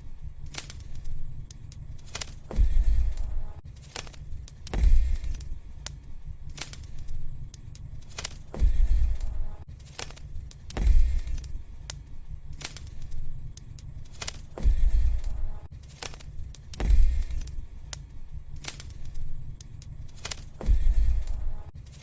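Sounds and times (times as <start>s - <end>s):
low rumble: 0.0s - 3.6s, 4.3s - 9.7s, 10.4s - 15.7s, 16.4s - 21.8s
wood fire crackling: 0.0s - 22.0s.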